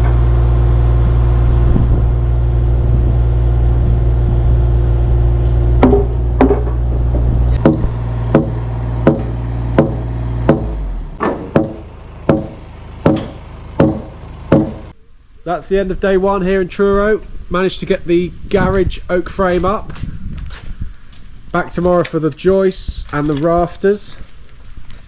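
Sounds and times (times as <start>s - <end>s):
engine running: 0.0s - 15.4s
mallet knocking on wood: 5.8s - 14.8s.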